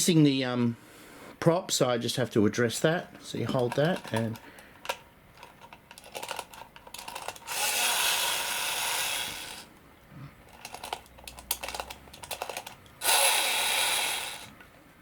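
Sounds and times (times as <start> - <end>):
key winding ratchet clicks: 5.4 - 9.7, 10.5 - 14.5
clockwork motor whirring: 6.0 - 9.7, 10.5 - 14.5.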